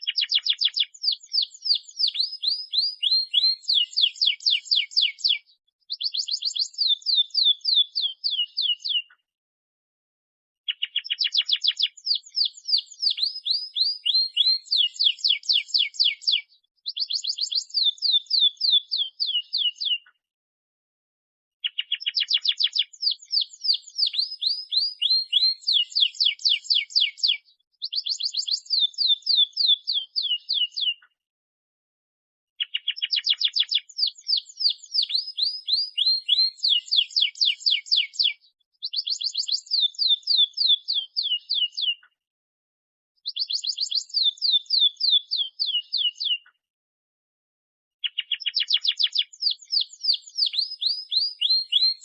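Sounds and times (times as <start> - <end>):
canary singing: 0.0 - 9.2, 10.7 - 20.1, 21.6 - 31.1, 32.6 - 42.1, 43.2 - 46.5, 48.0 - 52.0.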